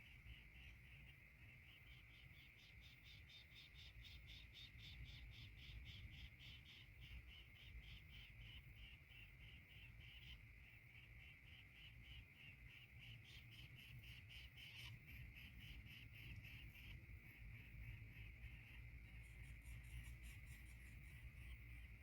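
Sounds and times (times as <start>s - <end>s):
insect chorus chirring: 0.0s - 22.0s
low background rumble: 5.6s - 22.0s.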